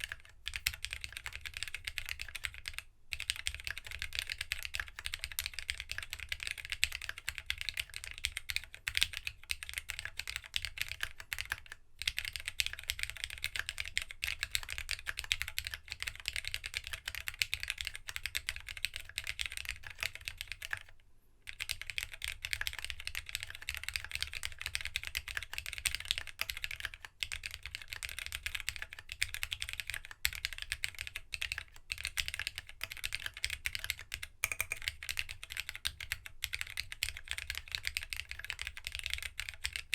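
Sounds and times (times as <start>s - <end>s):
fast mechanical keyboard typing: 0.0s - 20.9s, 21.5s - 39.9s.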